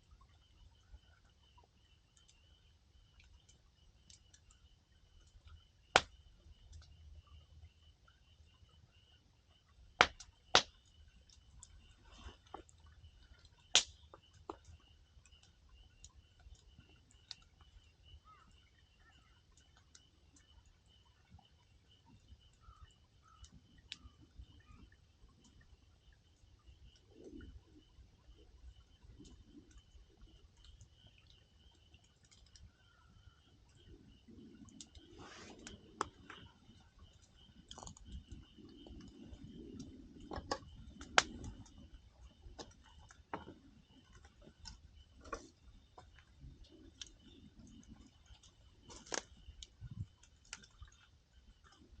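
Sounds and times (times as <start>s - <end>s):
campfire crackling: 5.2s - 6.8s, 9.9s - 15.5s, 34.4s - 41.8s, 44.1s - 51.0s
sharp pops and snaps: 5.2s - 6.9s, 10.0s - 17.7s, 34.6s - 36.5s, 37.1s - 41.8s, 48.8s - 51.0s.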